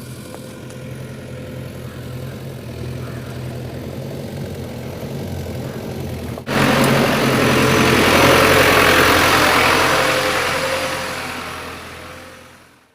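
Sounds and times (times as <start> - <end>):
diesel engine running: 0.0 - 12.9
loud rushing noise: 6.4 - 12.6.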